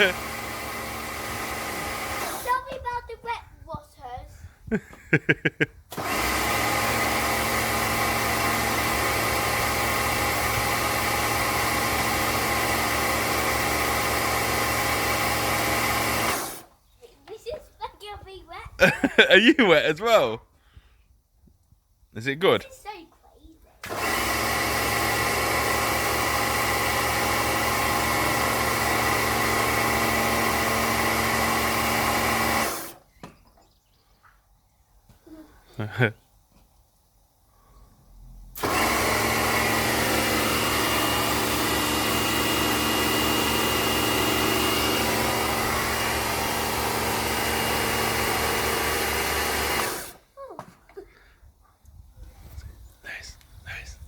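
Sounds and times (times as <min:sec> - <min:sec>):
pressure washer running: 0:00.0 - 0:02.6, 0:05.9 - 0:16.7, 0:23.8 - 0:33.0, 0:38.6 - 0:50.2.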